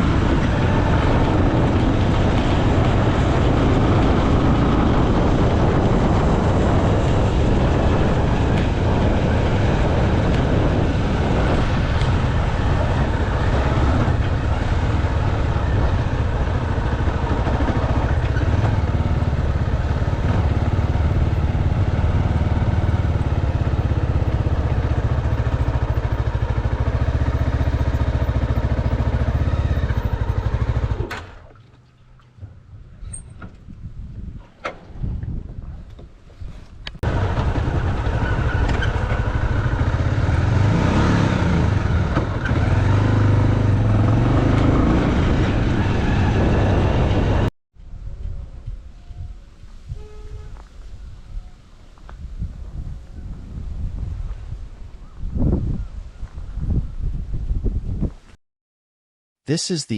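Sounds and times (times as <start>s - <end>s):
motorcycle engine rumble: 0.0s - 48.8s.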